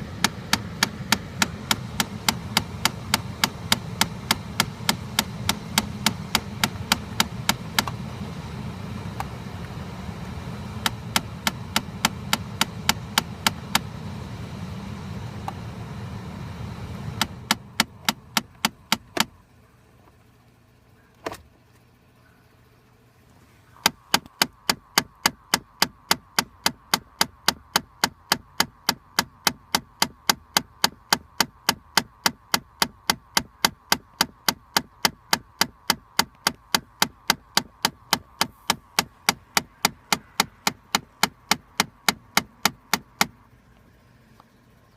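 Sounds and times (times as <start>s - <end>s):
rapid clicking behind glovebox: 0.0s - 19.4s, 23.7s - 44.9s
low hum: 0.0s - 24.1s.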